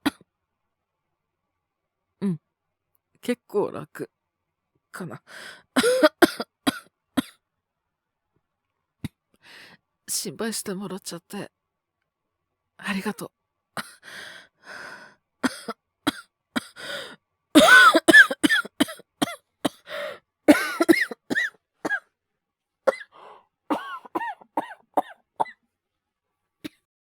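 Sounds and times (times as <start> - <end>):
man coughing: 5.8 - 6.8, 15.5 - 15.7, 17.6 - 19.8, 20.5 - 22.0, 23.7 - 24.8.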